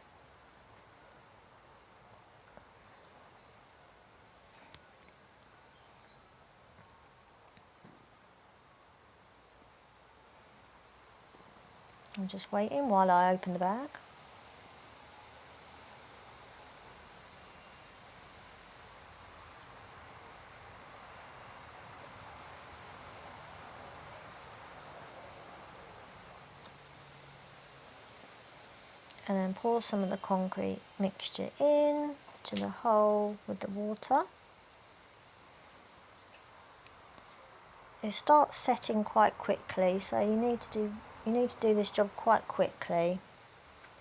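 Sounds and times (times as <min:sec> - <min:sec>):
faint outdoor hiss: 0:00.0 - 0:44.0
faint bird chirps and trills: 0:02.8 - 0:07.7, 0:16.7 - 0:18.0, 0:19.4 - 0:25.3.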